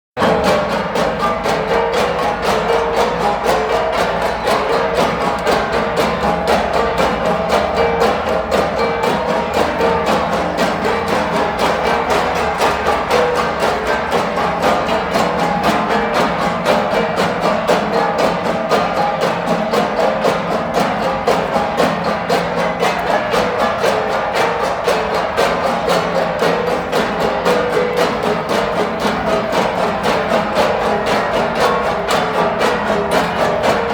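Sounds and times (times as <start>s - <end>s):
percussion music with ringing strikes: 0.2s - 33.9s.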